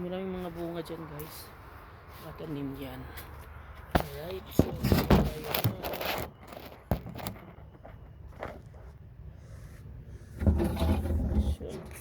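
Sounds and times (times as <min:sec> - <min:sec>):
rustling and scraping handling noise: 0:02.1 - 0:12.0.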